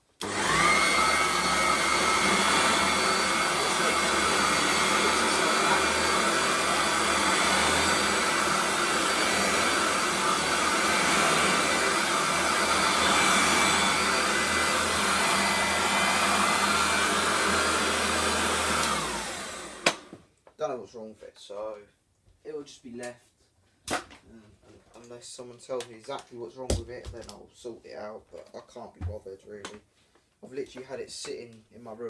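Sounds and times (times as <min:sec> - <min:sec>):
vacuum cleaner running: 0:00.1 - 0:20.2.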